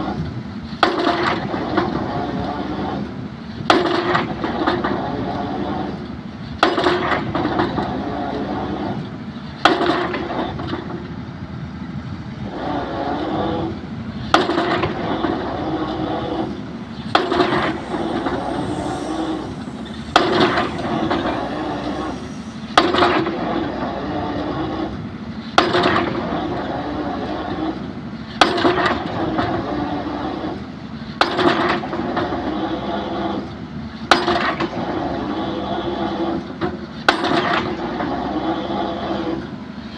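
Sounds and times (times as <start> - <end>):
diesel engine running: 0.0 - 39.9
drop hammer striking a pile: 28.4 - 29.0, 34.1 - 34.7.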